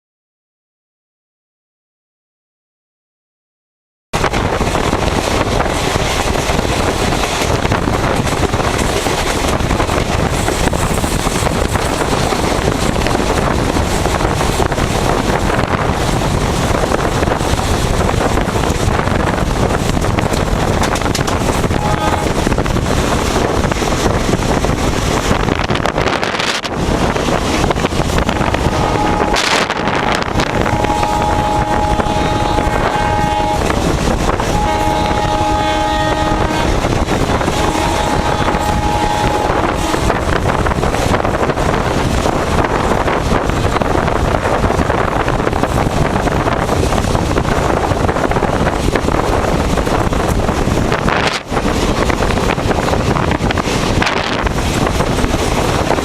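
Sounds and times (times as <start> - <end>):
train rushing past: 4.2 - 56.0
wind on microphone: 4.2 - 56.0
locomotive horn chord: 21.7 - 22.3, 28.7 - 33.8, 34.5 - 40.1.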